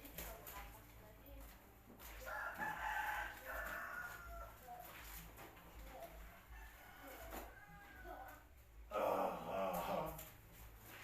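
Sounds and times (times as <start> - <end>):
rooster crowing: 2.3 - 4.5, 6.4 - 8.4.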